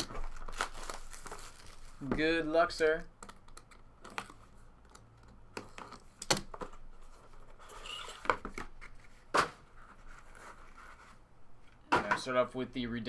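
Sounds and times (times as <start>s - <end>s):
cardboard and wrapper rustling: 0.0s - 2.4s.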